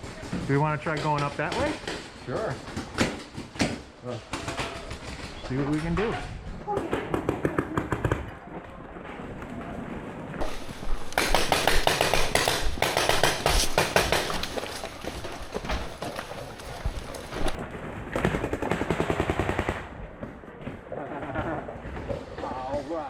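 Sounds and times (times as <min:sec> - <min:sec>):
paintball markers firing: 0:10.4 - 0:17.6.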